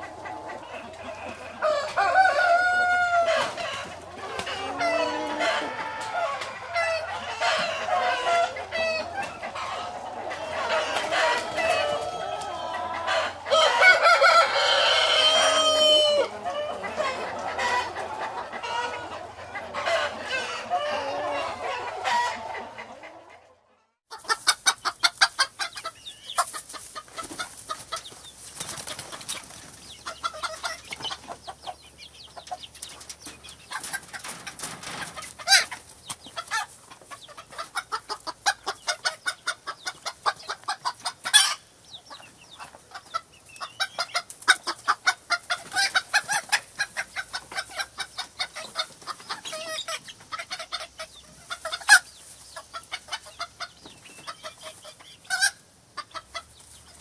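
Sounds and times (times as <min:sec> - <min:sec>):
chickens clucking: 0:00.0 - 0:57.0
rooster crowing: 0:01.2 - 0:17.9.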